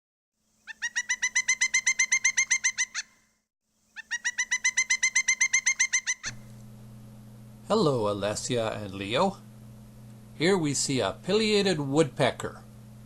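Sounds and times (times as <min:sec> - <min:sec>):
woodpecker calling: 0:00.6 - 0:03.3, 0:03.9 - 0:06.5.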